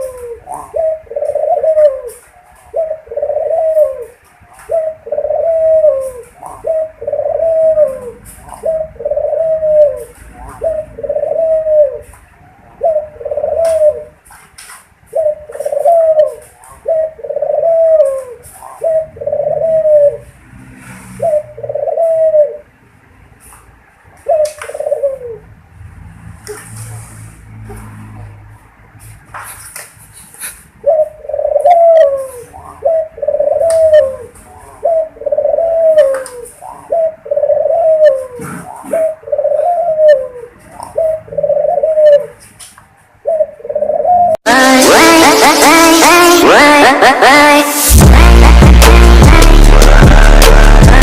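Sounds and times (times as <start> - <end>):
dove cooing: 0.0 - 14.3, 15.1 - 20.4, 21.0 - 22.8, 24.2 - 25.6, 30.4 - 42.6, 43.2 - 44.4.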